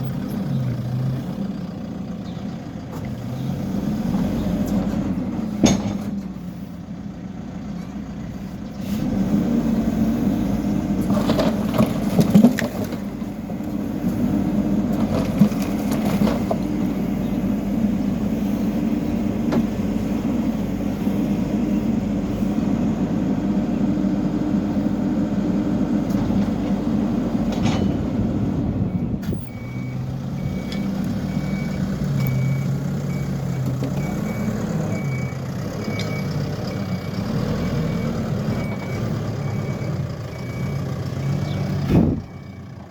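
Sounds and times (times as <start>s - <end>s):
diesel engine running under load: 0.0s - 42.9s
sharp knocks and clanks: 5.6s - 6.2s, 27.5s - 28.1s
reversing alarm beeping: 28.8s - 42.8s.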